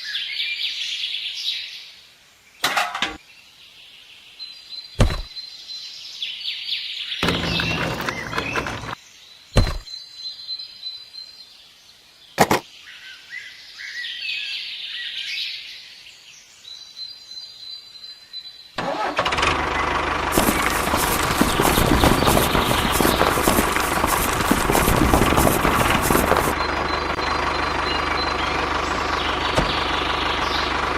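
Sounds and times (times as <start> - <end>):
birds chirping: 2.5 - 18.8, 20.4 - 30.9
loud noisy running: 18.8 - 30.9.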